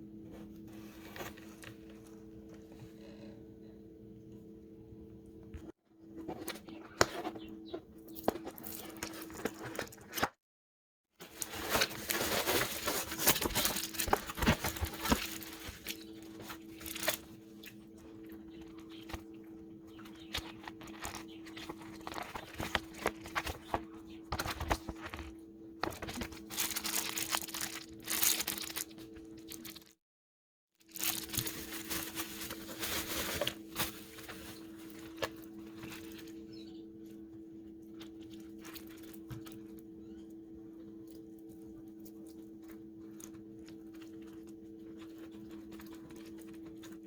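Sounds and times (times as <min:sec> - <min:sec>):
plastic packaging crinkling: 0:06.2 - 0:10.3, 0:11.2 - 0:30.0, 0:30.8 - 0:37.2, 0:41.1 - 0:47.0
steady low hum: 0:11.3 - 0:29.8.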